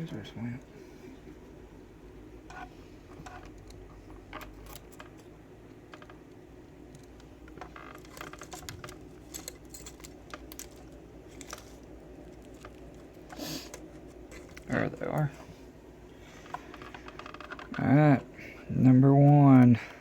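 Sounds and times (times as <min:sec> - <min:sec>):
faint steady hum: 0:00.0 - 0:20.0
small metal tools clinking: 0:07.8 - 0:11.8.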